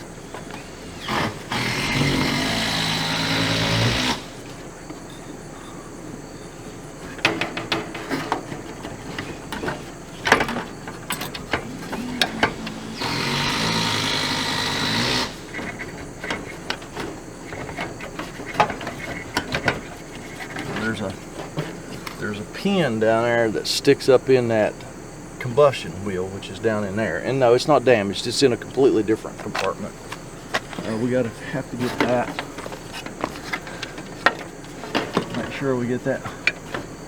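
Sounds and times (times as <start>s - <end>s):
small power drill running: 0.6s - 4.5s, 11.4s - 15.8s
clicks and knocks of parts handled: 7.1s - 14.6s, 31.8s - 35.6s.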